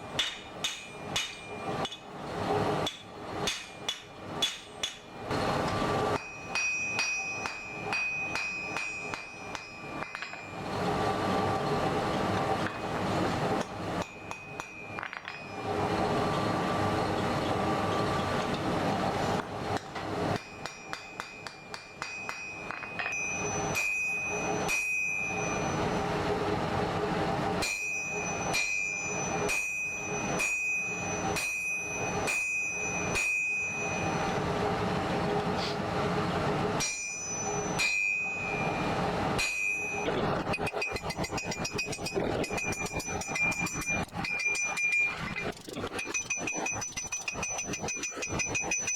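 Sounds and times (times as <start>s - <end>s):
steady background noise: 0.0s - 48.9s
hammer striking metal on anvil: 0.1s - 2.1s, 2.8s - 10.6s, 13.6s - 15.6s, 19.8s - 26.0s, 27.6s - 34.5s, 36.8s - 48.9s.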